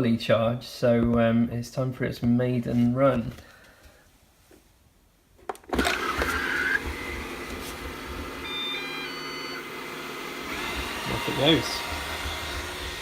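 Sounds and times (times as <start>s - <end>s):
robot vacuum motor running: 5.7s - 13.0s
electronic beeps: 8.4s - 9.6s.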